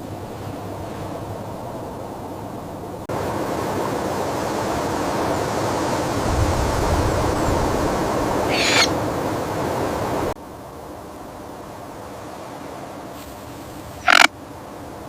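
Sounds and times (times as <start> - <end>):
steady rushing noise: 0.0 - 15.0
barn owl screech: 8.5 - 8.9, 14.0 - 14.3.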